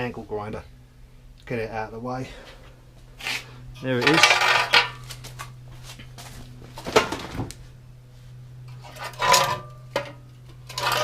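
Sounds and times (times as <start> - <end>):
low hum: 0.0 - 11.0
steel parts clanking: 4.0 - 5.0, 8.7 - 11.0.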